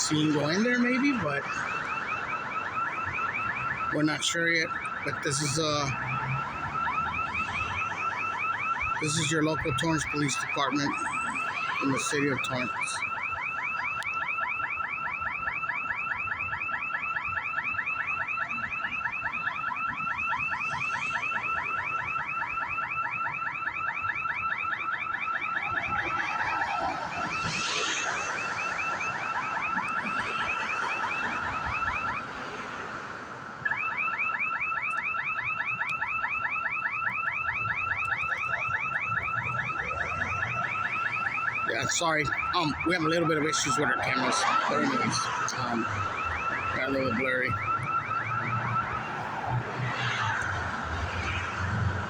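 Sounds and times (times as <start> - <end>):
alarm warbling: 0.0 - 14.0, 33.7 - 51.0.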